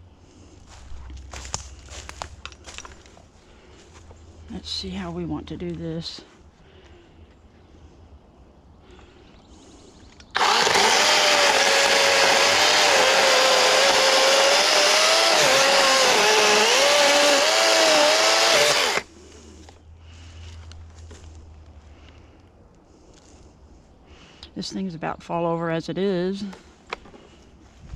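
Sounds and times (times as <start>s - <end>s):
electric chainsaw cutting wood: 10.3s - 19.1s.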